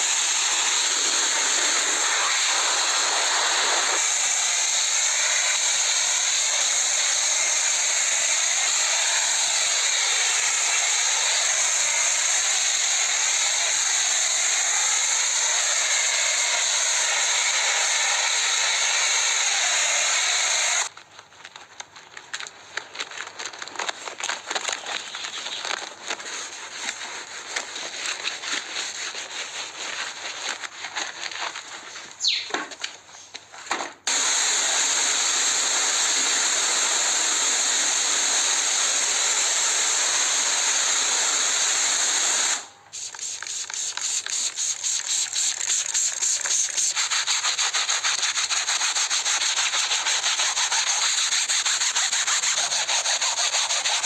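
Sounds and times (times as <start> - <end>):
sanding strokes on hard surface: 0.0 - 20.9, 26.3 - 31.2, 42.9 - 54.0.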